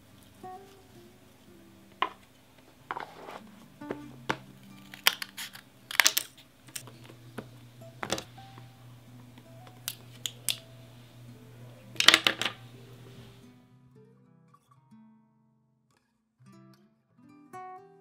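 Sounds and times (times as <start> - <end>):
faint background music: 0.0 - 14.4.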